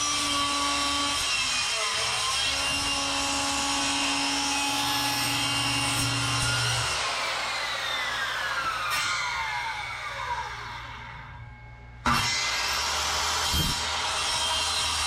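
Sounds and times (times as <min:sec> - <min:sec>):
power tool whine spinning down: 0:05.2 - 0:15.0.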